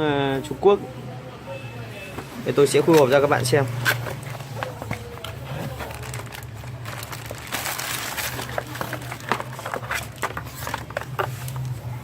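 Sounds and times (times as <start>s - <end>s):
packaging rustling: 2.8s - 12.0s
cardboard box clicks and scrapes: 7.5s - 11.8s.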